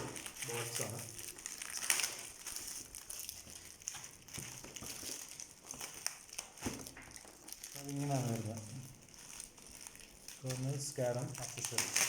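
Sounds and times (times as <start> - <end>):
packaging crinkling and rustling: 0.0 - 12.0.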